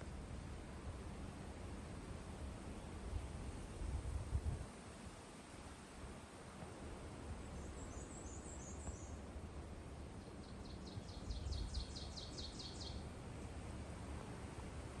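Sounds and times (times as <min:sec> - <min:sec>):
wind rumbling on microphone: 0:00.0 - 0:05.2
songbird calling and trilling: 0:07.6 - 0:09.2, 0:10.2 - 0:13.0.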